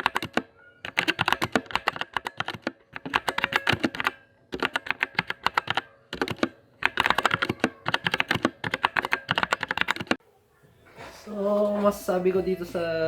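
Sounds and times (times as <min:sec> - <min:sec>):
mechanical keyboard typing: 0:00.0 - 0:10.2.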